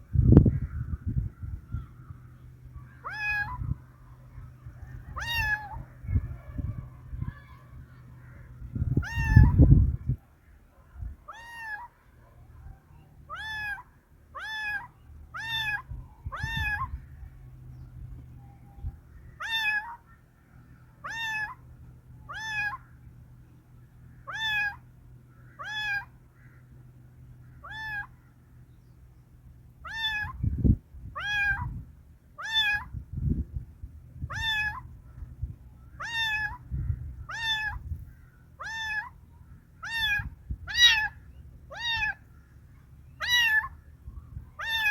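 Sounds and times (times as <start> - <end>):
cat meowing: 3.0 - 3.7, 5.1 - 6.6, 8.9 - 9.7, 11.3 - 11.9, 13.3 - 17.0, 19.4 - 20.0, 21.0 - 21.6, 22.3 - 22.8, 24.3 - 24.8, 25.6 - 26.1, 27.6 - 28.1, 29.8 - 30.4, 31.2 - 31.7, 32.4 - 32.9, 34.2 - 34.9, 36.0 - 36.7, 37.3 - 37.9, 38.6 - 39.2, 39.8 - 42.2, 43.2 - 43.8, 44.6 - 44.9.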